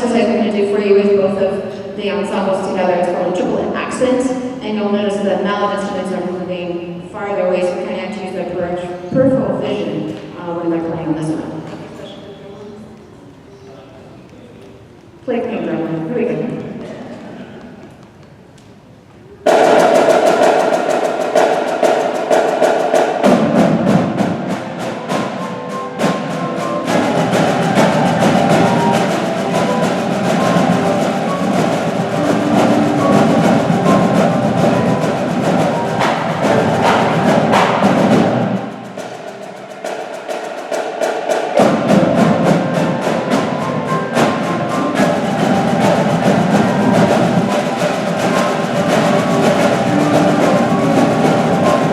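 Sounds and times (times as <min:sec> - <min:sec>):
fast drumline strokes: 0:19.4 - 0:51.9
sustained mallet notes: 0:25.6 - 0:37.5.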